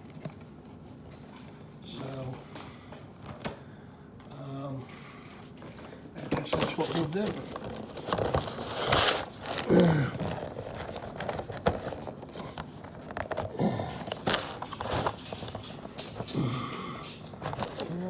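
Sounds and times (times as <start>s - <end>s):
cardboard box handled: 6.5s - 9.7s.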